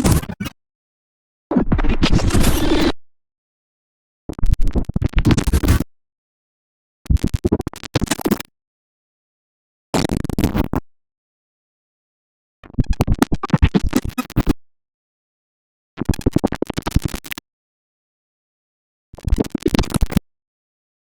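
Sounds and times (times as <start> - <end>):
digital glitch stuttering clicks: 1.5 - 3.0.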